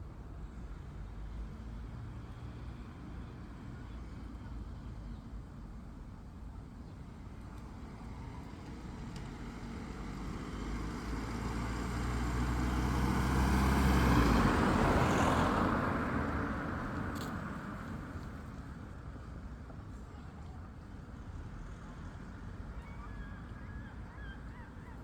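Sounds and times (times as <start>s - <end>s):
vehicle driving past: 9.4s - 18.5s.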